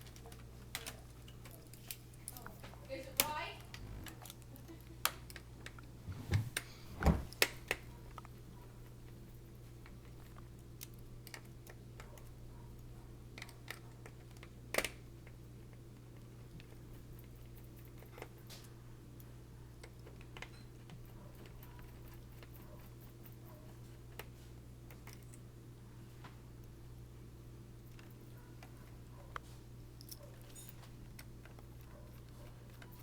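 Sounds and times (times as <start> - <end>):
steady low hum: 2.4 - 4.5.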